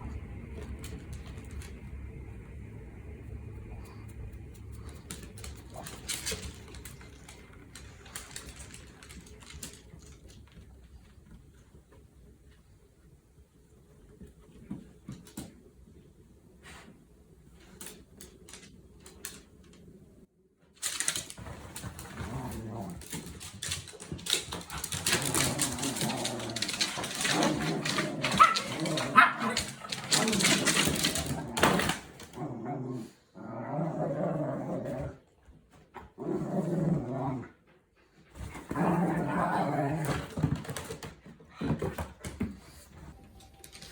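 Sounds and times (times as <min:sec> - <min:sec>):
low room hum: 0:00.0 - 0:43.9
dog claws clicking on hard floor: 0:04.2 - 0:11.1, 0:20.8 - 0:32.3
dog growling: 0:24.6 - 0:35.2, 0:36.2 - 0:37.6, 0:38.7 - 0:40.4.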